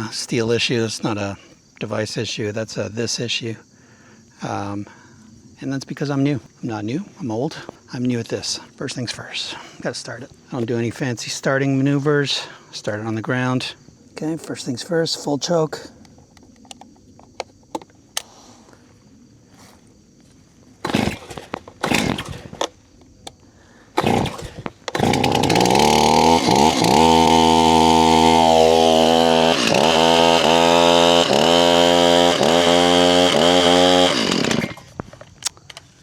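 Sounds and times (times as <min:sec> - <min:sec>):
chainsaw engine running: 0:20.8 - 0:22.7, 0:24.0 - 0:35.0
chainsaw pull-cord bursts: 0:20.8 - 0:22.8, 0:24.0 - 0:35.0.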